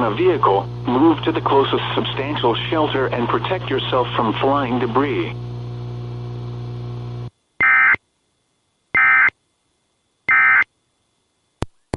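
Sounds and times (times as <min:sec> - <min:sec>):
low hum: 0:00.0 - 0:07.6.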